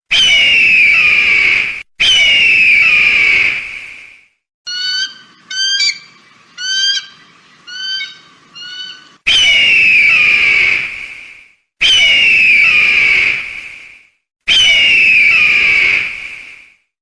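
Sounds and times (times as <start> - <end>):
eagle chirping calls: 4.7 - 10.7
eagle scream falling in pitch: 4.7 - 10.8.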